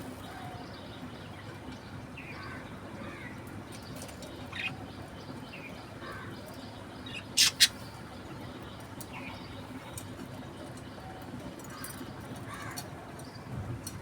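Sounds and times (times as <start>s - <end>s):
budgerigar chirping: 7.2s - 7.8s.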